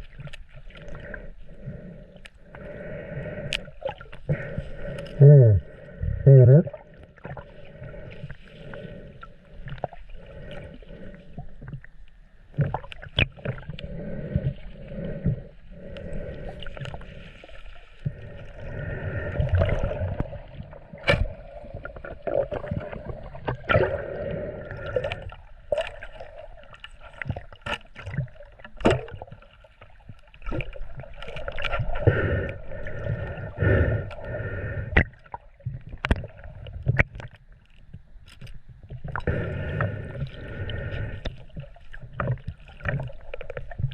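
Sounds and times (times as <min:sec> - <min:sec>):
water sloshing and gurgling: 0:00.0 - 0:43.9.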